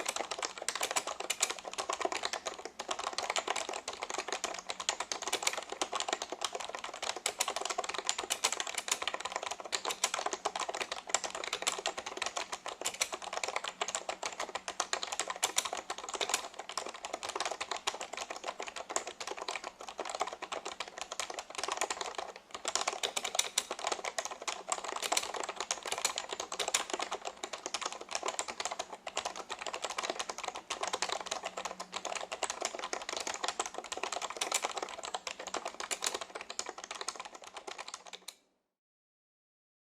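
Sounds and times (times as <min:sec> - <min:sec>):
fast keyboard typing: 0:00.0 - 0:38.4.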